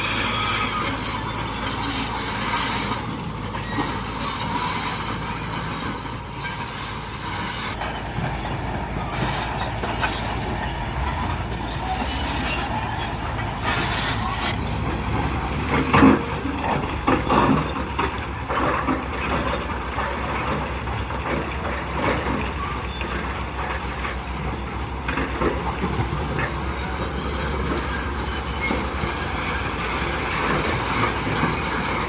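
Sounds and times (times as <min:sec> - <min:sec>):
diesel engine running: 0:00.0 - 0:32.0
metal squealing and clanking: 0:00.0 - 0:32.0.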